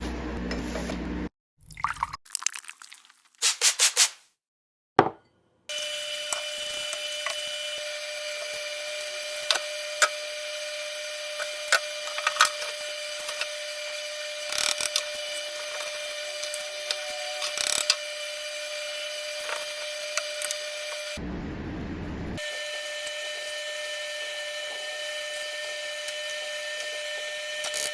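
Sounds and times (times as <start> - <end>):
steady hum: 20.4 - 22.4.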